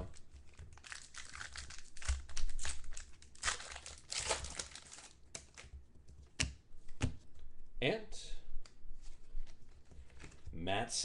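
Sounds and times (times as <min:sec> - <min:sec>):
wrappers crinkling: 0:00.1 - 0:05.7.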